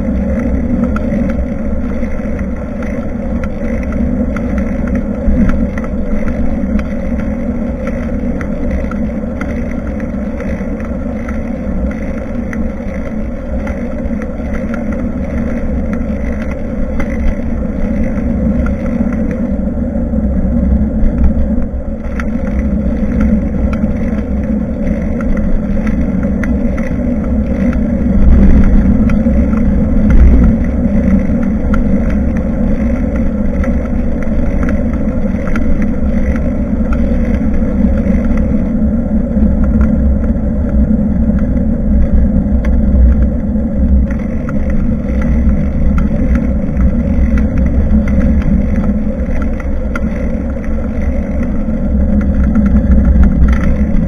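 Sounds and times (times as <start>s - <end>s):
steady rumble: 0.0s - 54.0s
wind buffeting microphone: 0.0s - 54.0s.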